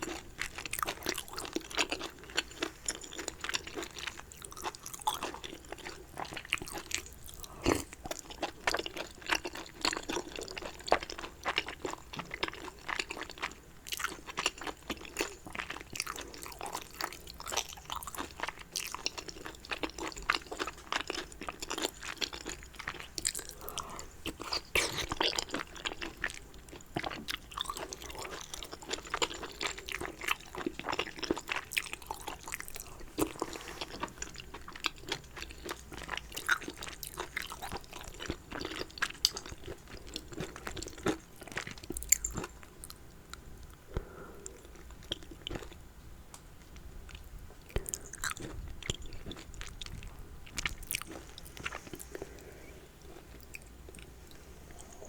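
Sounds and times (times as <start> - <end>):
wet chewing and mouth smacks: 0.0 - 52.4.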